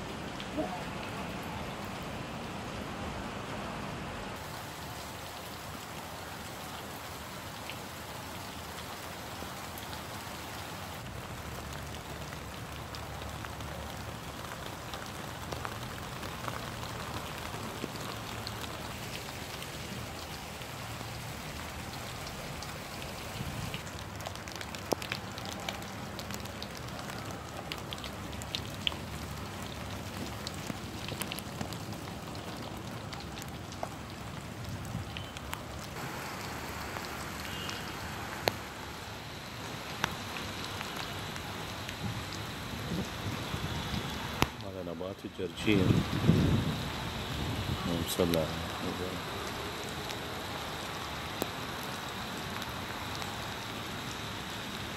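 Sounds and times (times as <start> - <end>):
rain falling: 0.0 - 54.9
raindrop hits: 11.1 - 44.6.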